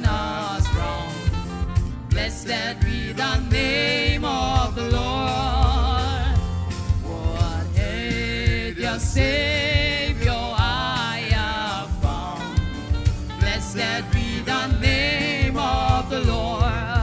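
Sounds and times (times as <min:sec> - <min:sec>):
instrumental accompaniment: 0:00.0 - 0:17.0
steady percussive beat: 0:00.0 - 0:17.0
voices singing a hymn: 0:00.0 - 0:17.0.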